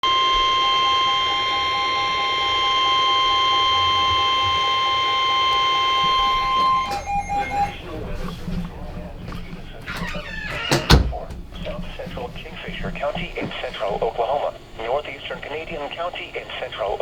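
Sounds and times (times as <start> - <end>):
high-pitched alarm tone: 0.0 - 8.2
rapidly pulsing beep: 0.0 - 8.2.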